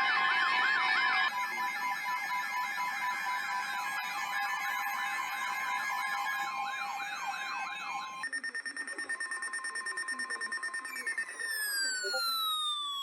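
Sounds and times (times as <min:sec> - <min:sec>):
electronic sirens wailing: 0:00.0 - 0:08.2, 0:10.9 - 0:13.0.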